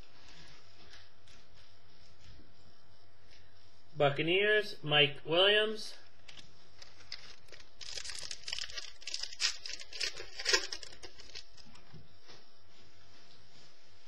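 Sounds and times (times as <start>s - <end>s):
trading cards flicking and rustling: 6.2s - 11.8s.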